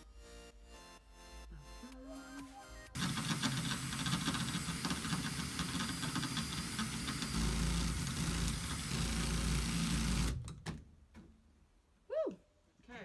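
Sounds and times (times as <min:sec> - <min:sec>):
cordless drill grinding into metal: 0:03.0 - 0:10.6.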